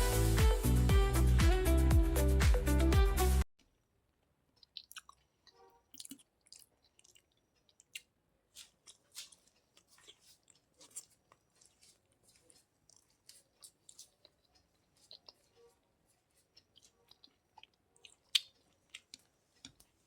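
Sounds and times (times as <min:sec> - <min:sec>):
mouth chewing food: 0:04.5 - 0:20.0.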